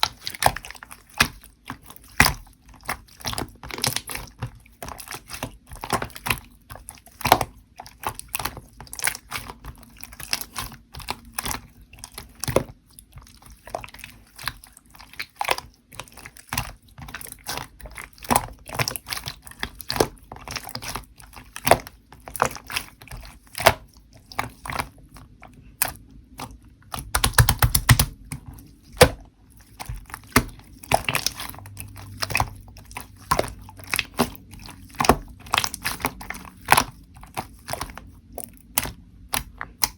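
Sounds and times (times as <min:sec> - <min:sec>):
slime squished by hand: 0:00.0 - 0:39.9
wet pops and clicks: 0:25.8 - 0:28.4.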